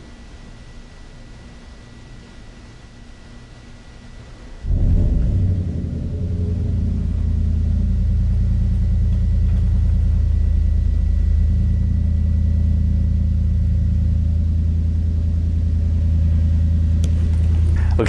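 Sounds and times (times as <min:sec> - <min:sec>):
low mechanical hum: 0:00.0 - 0:18.0.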